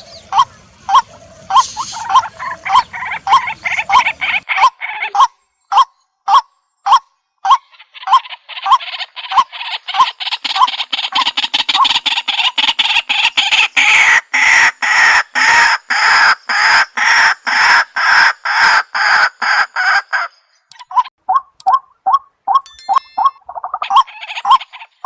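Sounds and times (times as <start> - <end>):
bird calling: 0.0 - 5.8.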